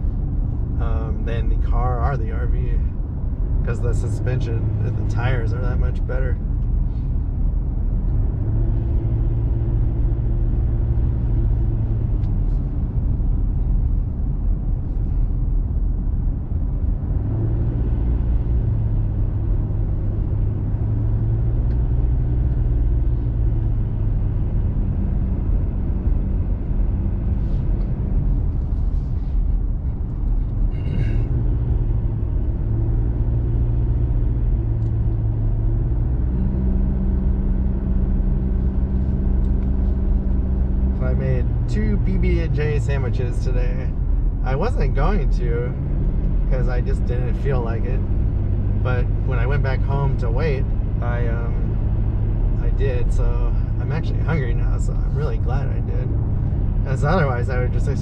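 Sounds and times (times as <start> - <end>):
truck engine and tyres droning: 0.0 - 58.0.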